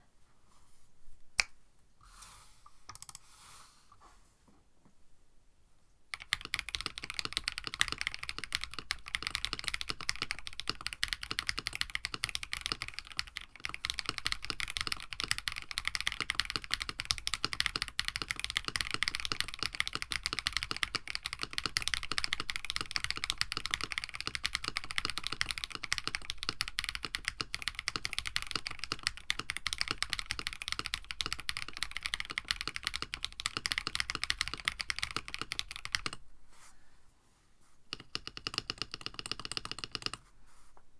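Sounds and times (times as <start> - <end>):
fast keyboard typing clacks: 6.1 - 36.2, 37.9 - 40.2.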